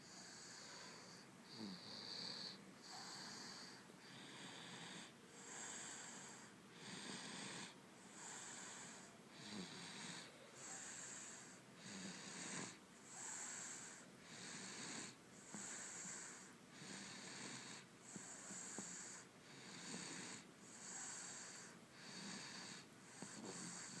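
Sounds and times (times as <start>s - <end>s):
baby snoring softly: 0.0s - 24.0s.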